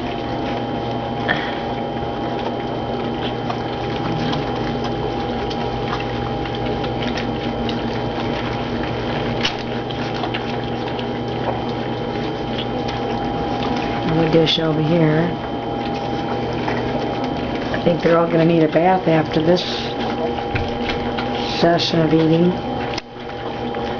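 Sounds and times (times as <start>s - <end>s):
puppies lapping wet food: 0.0s - 23.9s
steady background hum: 0.0s - 23.9s.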